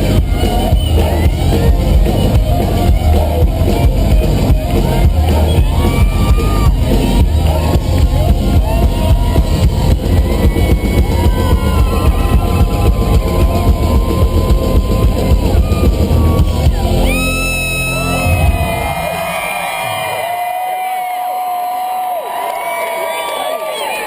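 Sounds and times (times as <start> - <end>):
drum beat: 0.0 - 19.8
live country-rock band: 0.0 - 19.8.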